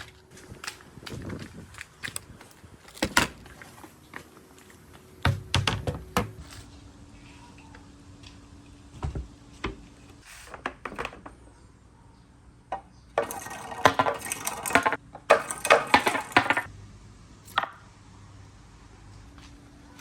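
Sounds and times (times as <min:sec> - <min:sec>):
marbles clattering on wooden run: 0:13.2 - 0:16.7.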